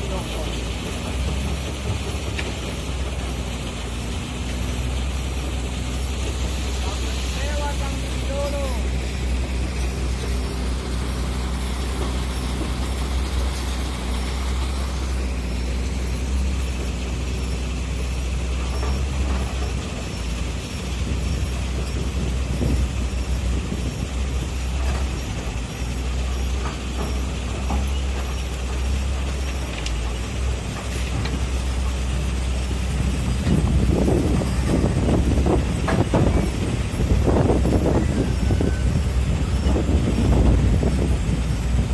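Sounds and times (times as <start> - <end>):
diesel engine droning: 0.0 - 41.9
knocks and clanks: 33.4 - 36.7.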